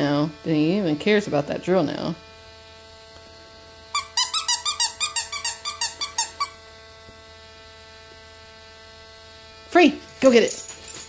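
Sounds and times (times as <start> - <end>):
squeaky dog toy squeaking: 3.9 - 6.6.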